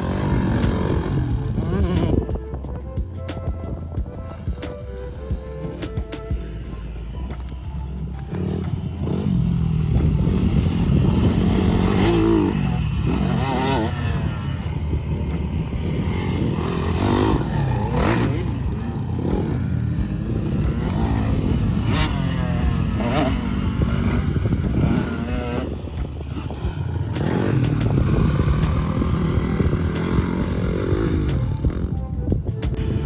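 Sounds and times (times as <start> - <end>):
vehicle engine revving: 5.6 - 31.8.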